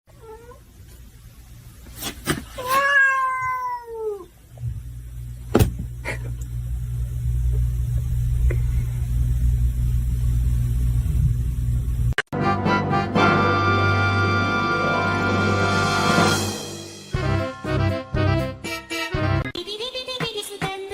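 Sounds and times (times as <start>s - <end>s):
cat meowing: 2.6s - 4.3s
sharp knock: 5.5s - 5.9s.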